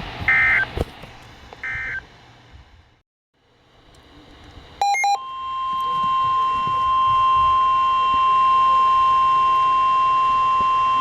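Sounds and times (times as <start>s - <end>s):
weather radio alarm tone: 1.6s - 2.0s, 4.8s - 11.0s.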